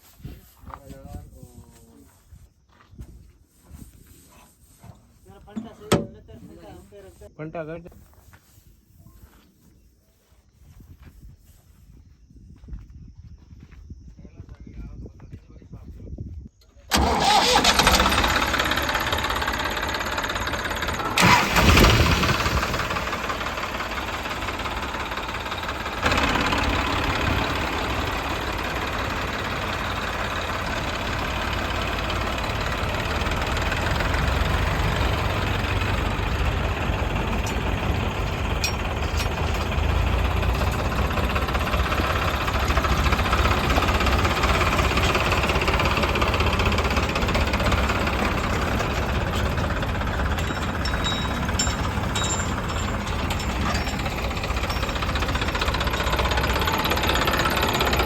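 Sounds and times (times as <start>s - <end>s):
heavy diesel engine running: 16.9s - 58.0s.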